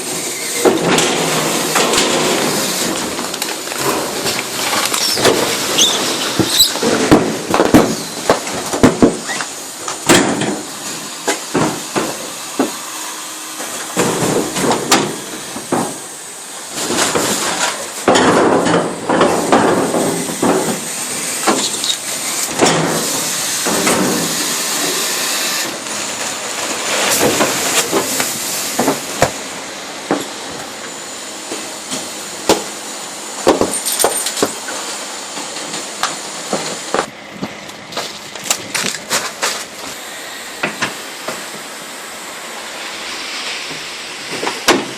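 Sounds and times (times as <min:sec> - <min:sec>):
garbage truck compactor crushing: 0:00.0 - 0:44.9
trash bags bursting with pops: 0:00.6 - 0:12.8.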